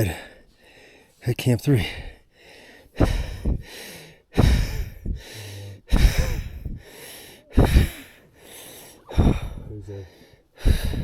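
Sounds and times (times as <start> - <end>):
man breathing hard and fast: 0.0 - 11.0.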